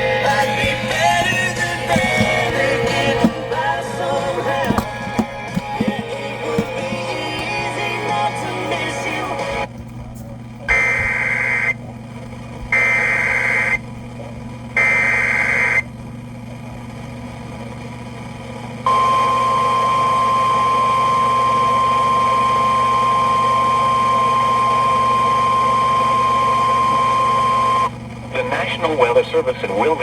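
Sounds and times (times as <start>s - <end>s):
single-pitch warning alarm tone: 10.7s - 11.8s, 12.7s - 13.8s, 14.8s - 15.8s, 18.9s - 28.0s.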